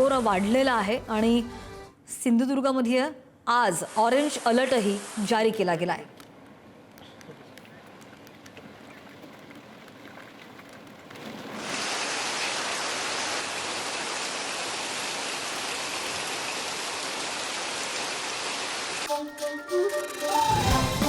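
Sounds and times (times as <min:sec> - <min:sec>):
heavy rain pouring: 0:11.1 - 0:19.1.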